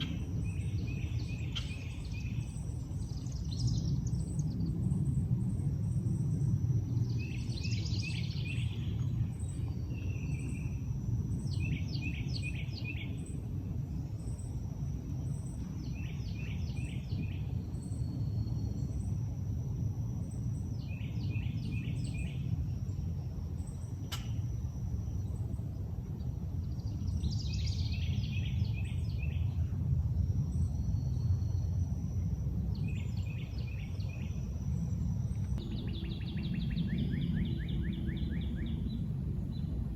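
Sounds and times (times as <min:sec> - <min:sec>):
songbird singing: 0:00.0 - 0:39.9
steady low rumble: 0:00.0 - 0:39.9.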